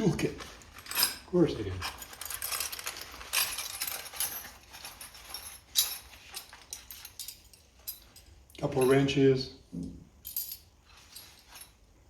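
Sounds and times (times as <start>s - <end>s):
metal hand tools clinking: 0.7s - 9.1s.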